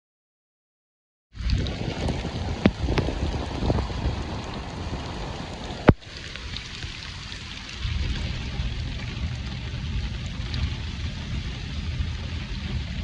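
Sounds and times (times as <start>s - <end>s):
rain falling: 1.4s - 13.0s.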